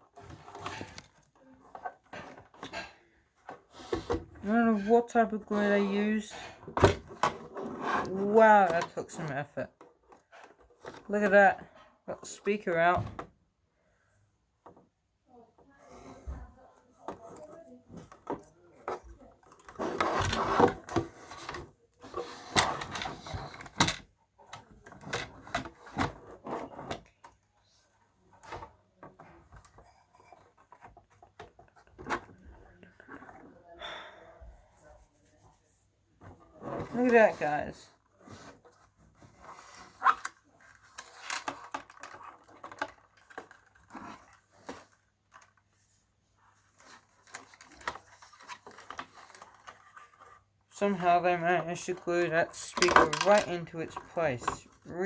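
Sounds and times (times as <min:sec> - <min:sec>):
plastic radio casing clicks and rattles: 0:40.0 - 0:45.6, 0:51.2 - 0:55.0
clicks and rattles of radio parts: 0:51.0 - 0:55.0.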